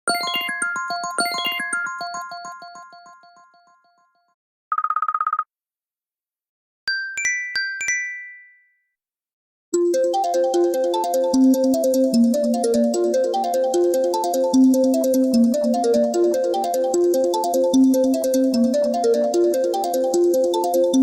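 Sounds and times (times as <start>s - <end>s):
bell-like chime notes: 0.1s - 4.1s
ringing dings: 6.9s - 8.8s.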